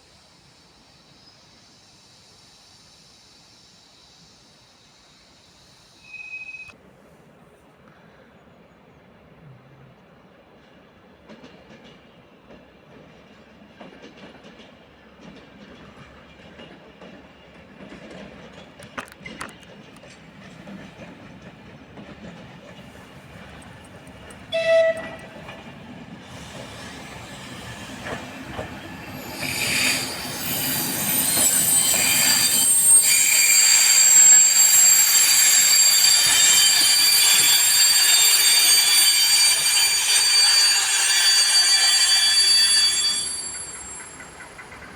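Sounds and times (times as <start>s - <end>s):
train wheels squealing: 0.0s - 6.8s, 10.6s - 44.9s
train wheels rumbling: 11.1s - 44.9s
train horn blast: 24.5s - 25.3s.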